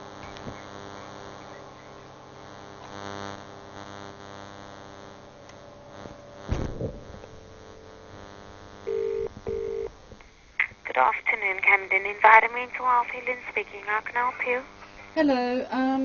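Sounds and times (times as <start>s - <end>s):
telephone line buzz: 0.0s - 15.2s
electrical mains hum: 0.0s - 16.0s
loud thump: 6.0s - 7.6s.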